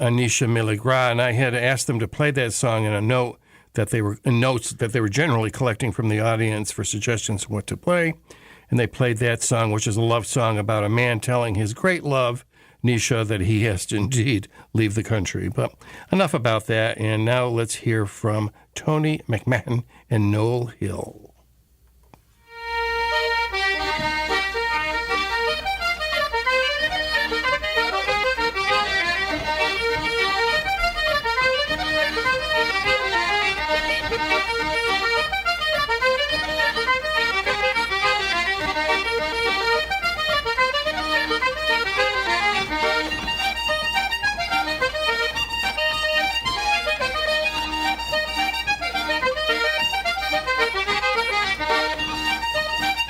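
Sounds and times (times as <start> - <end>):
accordion and concertina folk music: 0.0 - 3.2, 22.4 - 53.0.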